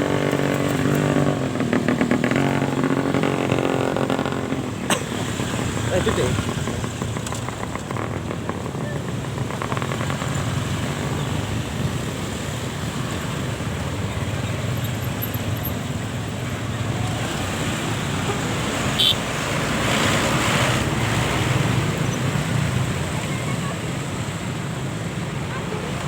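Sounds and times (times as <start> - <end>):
roadside traffic rumble: 0.0 - 26.0
vehicle passing close: 0.0 - 26.0.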